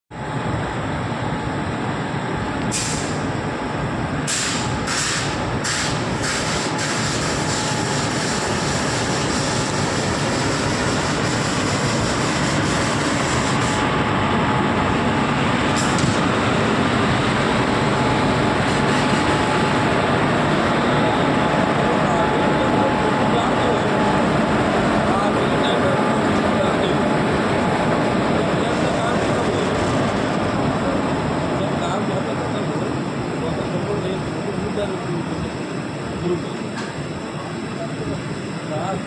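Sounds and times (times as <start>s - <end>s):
passenger train rumbling: 0.2s - 39.0s
short hissing bursts: 4.3s - 13.8s.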